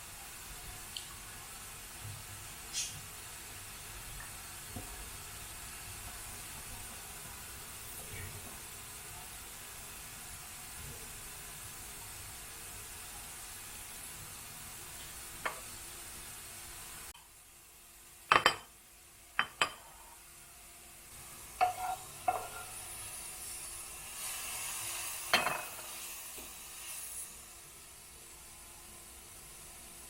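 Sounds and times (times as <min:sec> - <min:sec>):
brief hiss: 0:02.7 - 0:03.0
kitchenware knocks and clinks: 0:18.3 - 0:18.7, 0:19.4 - 0:19.9, 0:21.6 - 0:22.8, 0:25.4 - 0:25.8.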